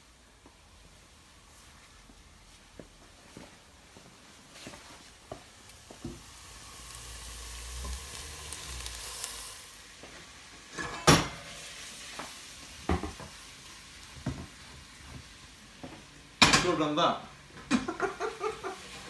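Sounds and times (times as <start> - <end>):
food sizzling in hot oil: 4.1 - 19.0.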